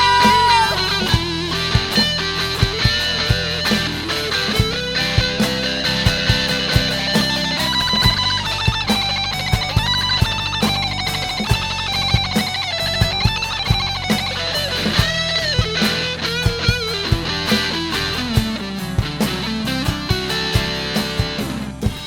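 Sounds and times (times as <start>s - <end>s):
electric guitar lead: 0.0s - 22.0s
steady drum beat: 0.0s - 22.0s.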